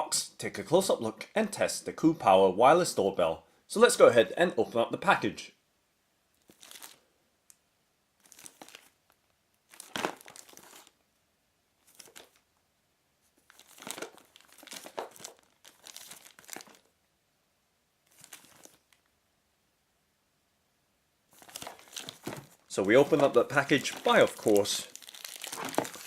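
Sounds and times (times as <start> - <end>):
plastic wrapper crinkling: 6.4 - 7.6, 8.2 - 11.0, 11.8 - 12.4, 13.4 - 16.9, 18.0 - 19.1, 21.3 - 26.0.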